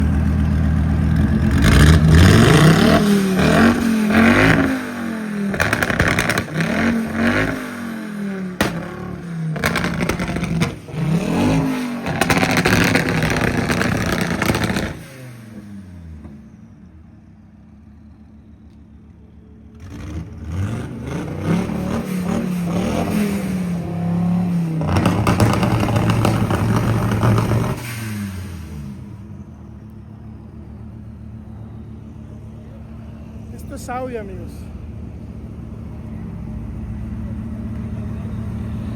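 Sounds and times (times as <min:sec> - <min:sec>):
rally car engine revving: 0:00.0 - 0:16.4, 0:19.8 - 0:29.3.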